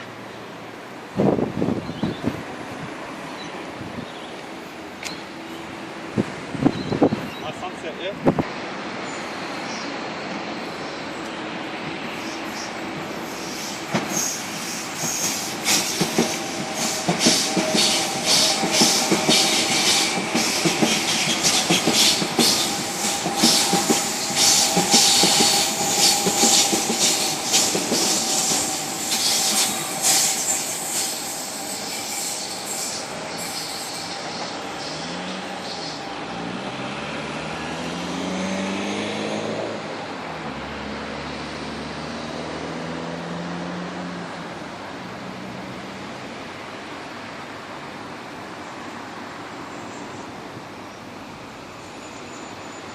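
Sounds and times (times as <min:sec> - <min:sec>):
train wheels clattering on rails: 0:12.2 - 0:35.1
train motor whine: 0:12.2 - 0:37.8.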